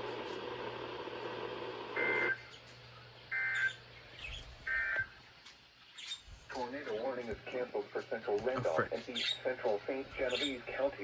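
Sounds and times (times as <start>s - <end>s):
radio hiss: 0.0s - 3.0s, 6.3s - 11.0s.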